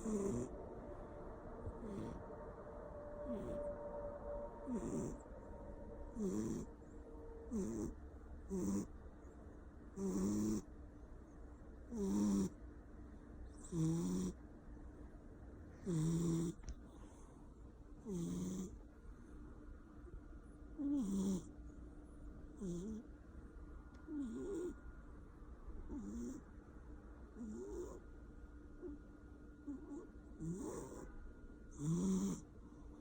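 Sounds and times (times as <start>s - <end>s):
cat snoring: 0.0s - 0.8s, 1.6s - 5.4s, 6.1s - 6.8s, 7.4s - 8.9s, 9.9s - 10.7s, 11.9s - 12.6s, 13.6s - 14.4s, 15.8s - 17.2s, 18.0s - 18.8s, 20.8s - 21.5s, 22.6s - 23.1s, 24.0s - 24.8s, 25.9s - 26.4s, 27.4s - 28.0s, 28.8s - 29.0s, 29.6s - 31.1s, 31.7s - 32.5s.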